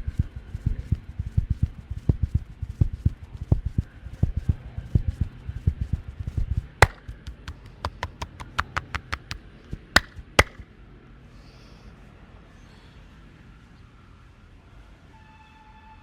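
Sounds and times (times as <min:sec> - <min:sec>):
hands pounding on body: 0:00.0 - 0:10.6
sharp cracks: 0:06.8 - 0:10.6.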